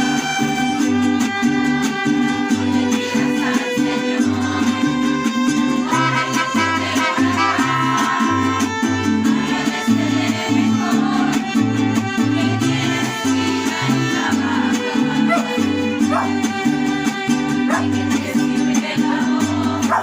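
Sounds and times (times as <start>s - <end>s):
strummed guitars: 0.0s - 20.0s
violins: 0.0s - 20.0s
plucked bass line: 13.7s - 20.0s.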